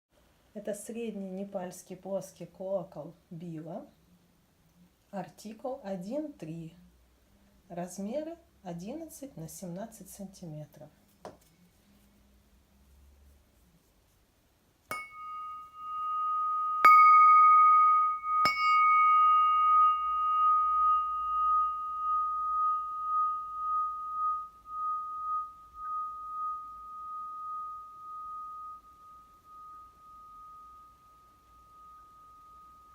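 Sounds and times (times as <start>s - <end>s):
flat bell ringing: 14.9s - 32.9s.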